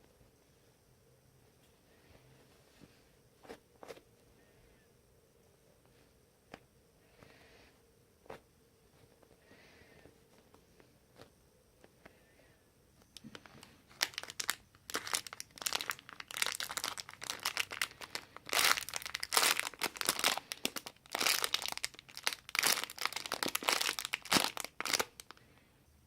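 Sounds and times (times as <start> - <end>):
plastic wrapping crinkling: 13.2 - 25.4.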